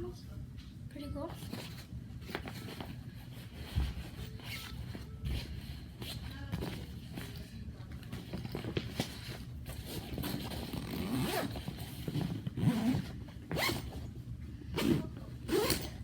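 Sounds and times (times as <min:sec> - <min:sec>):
bag zipper being pulled: 0:09.4 - 0:14.1, 0:14.8 - 0:16.0.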